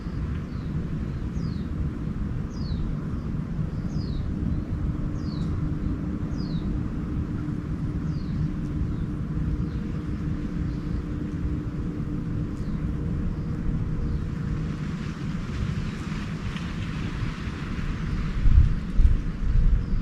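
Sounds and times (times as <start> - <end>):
songbird calling: 0.0 - 1.8, 2.5 - 6.8, 7.9 - 11.6
constant hum: 0.0 - 20.0.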